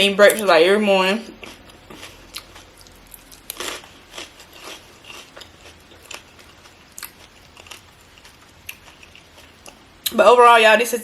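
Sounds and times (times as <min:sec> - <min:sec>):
person chewing crunchy food: 0:01.2 - 0:09.9.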